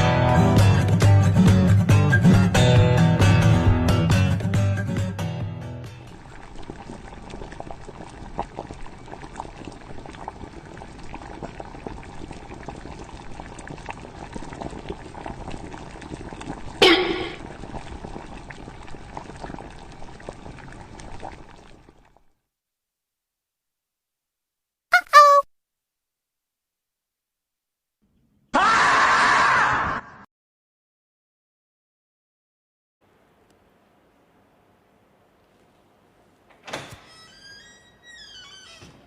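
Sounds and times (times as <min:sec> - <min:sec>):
liquid bubbling with fine crackle: 0:06.0 - 0:22.4.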